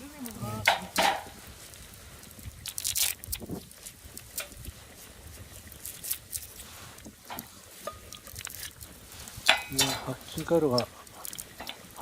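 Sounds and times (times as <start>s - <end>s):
wood fire crackling: 0.0s - 12.0s
sharp pops of burning wood: 0.2s - 12.0s.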